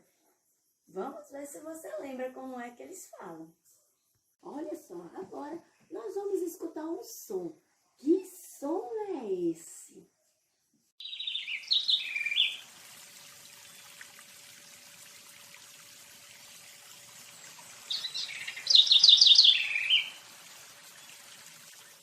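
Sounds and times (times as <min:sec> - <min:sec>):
small bird chirping: 0:11.0 - 0:12.6, 0:17.4 - 0:22.0
faint background hiss: 0:16.3 - 0:21.8.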